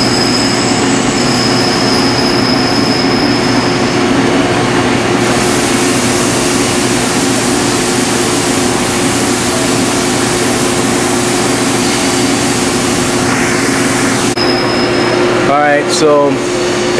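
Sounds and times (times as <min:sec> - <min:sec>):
thin high squeal: 0:00.0 - 0:04.0, 0:11.3 - 0:15.2
metal lathe humming: 0:00.0 - 0:16.9
high hiss: 0:05.2 - 0:14.4.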